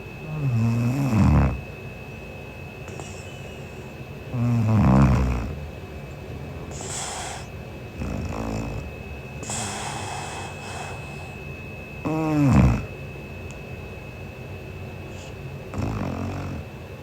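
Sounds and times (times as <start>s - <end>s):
breathy hiss: 0.0s - 1.7s, 2.8s - 13.0s, 15.0s - 16.7s
woman snoring: 0.2s - 1.6s, 2.9s - 5.7s, 6.6s - 11.3s, 12.0s - 12.9s, 15.2s - 16.7s.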